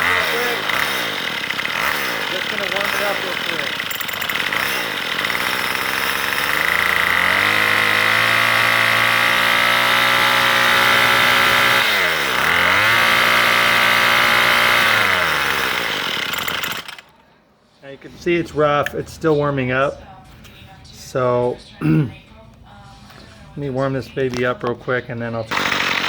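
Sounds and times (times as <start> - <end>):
string trimmer engine revving: 0.0 - 17.2, 25.5 - 26.0.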